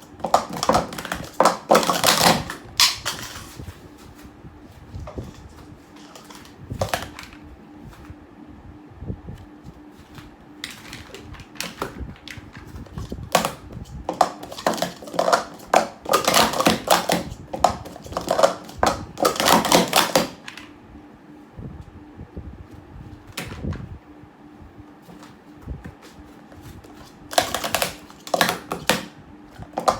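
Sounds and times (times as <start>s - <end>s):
plastic cups clattering: 0.0s - 3.6s, 6.0s - 7.4s, 10.6s - 20.7s, 26.6s - 29.9s.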